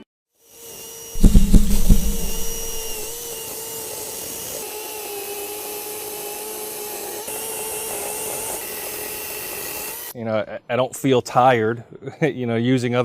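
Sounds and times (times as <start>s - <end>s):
heavy knocks: 1.2s - 3.2s.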